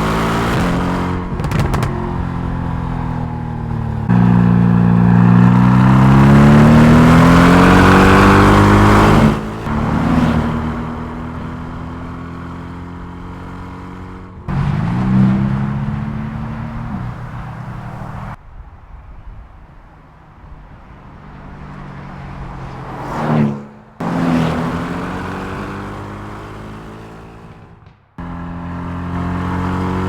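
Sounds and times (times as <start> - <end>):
sports car engine accelerating: 0.0 - 18.4, 21.4 - 30.0.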